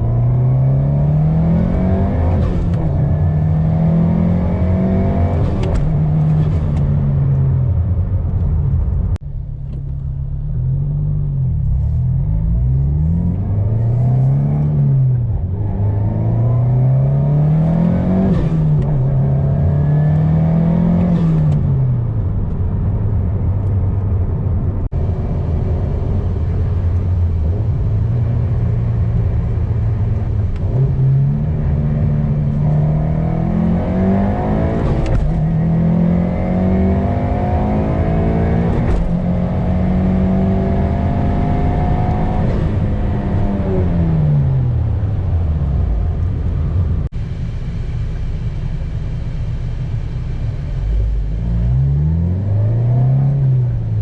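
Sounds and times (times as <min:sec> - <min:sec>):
turbocharged car engine revving: 0:00.0 - 0:07.0, 0:30.4 - 0:46.4.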